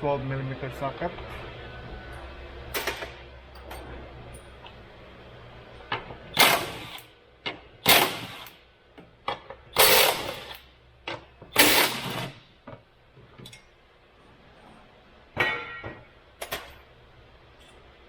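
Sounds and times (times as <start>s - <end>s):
impact wrench bursts: 6.3s - 7.1s, 7.8s - 8.6s, 9.8s - 10.7s, 11.5s - 12.4s.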